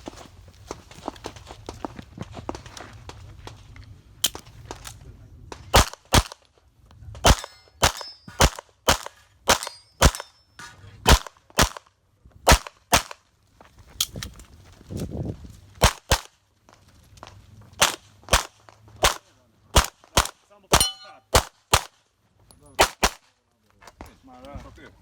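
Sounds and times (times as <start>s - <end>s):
rapid pistol shots: 5.7s - 6.4s, 7.2s - 10.3s, 11.1s - 11.9s, 12.5s - 13.2s, 15.8s - 16.3s, 17.8s - 22.0s, 22.8s - 23.3s
steel target ringing: 9.5s - 10.6s, 20.8s - 21.3s.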